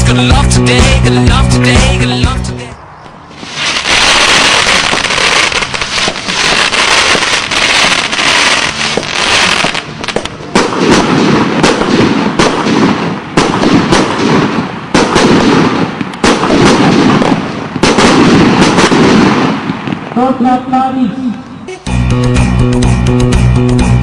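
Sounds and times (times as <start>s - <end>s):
fireworks crackling and banging: 3.3s - 20.8s.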